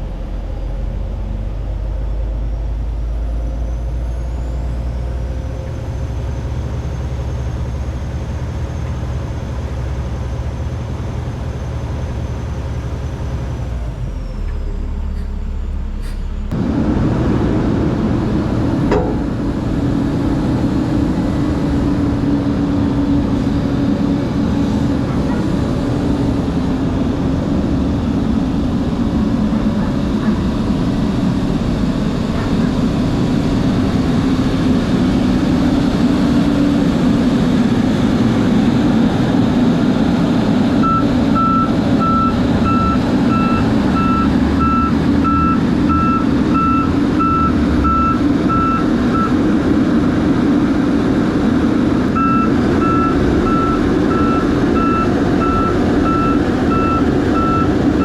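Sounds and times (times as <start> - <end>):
diesel truck engine running: 0.0 - 58.0
reversing beeper: 40.8 - 49.4, 52.2 - 58.0.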